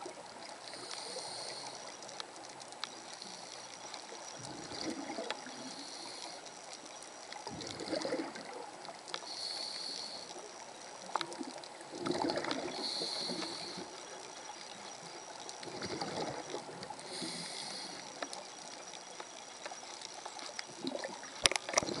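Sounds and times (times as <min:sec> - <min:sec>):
regulator breathing hiss: 0:00.6 - 0:02.2, 0:05.5 - 0:06.6, 0:09.2 - 0:10.5, 0:12.7 - 0:14.0, 0:16.9 - 0:18.4
gurgling exhaust bubbles: 0:04.4 - 0:05.4, 0:07.5 - 0:08.6, 0:11.9 - 0:13.9, 0:15.6 - 0:16.8.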